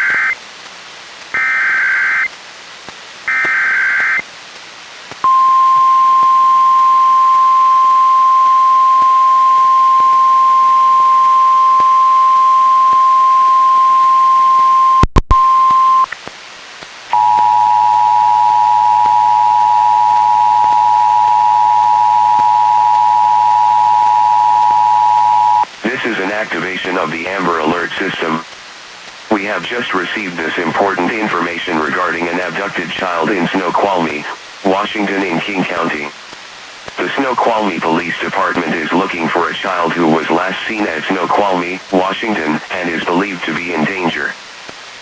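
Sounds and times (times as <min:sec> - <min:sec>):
single-pitch warning alarm tone: 0:05.3 - 0:16.1, 0:17.1 - 0:25.6.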